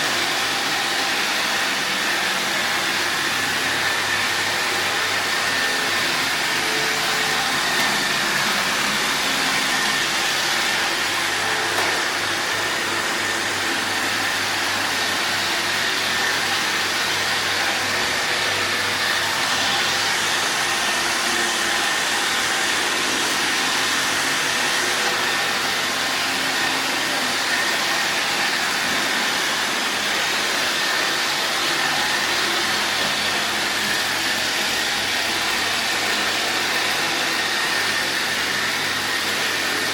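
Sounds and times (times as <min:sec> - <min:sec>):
robot vacuum cleaner whirring: 0:00.0 - 0:39.9.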